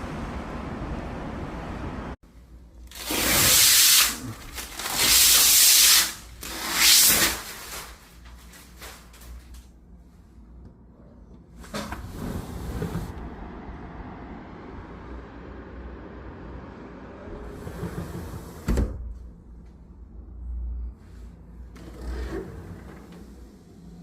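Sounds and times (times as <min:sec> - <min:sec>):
loud hissing bursts: 0:03.0 - 0:07.4.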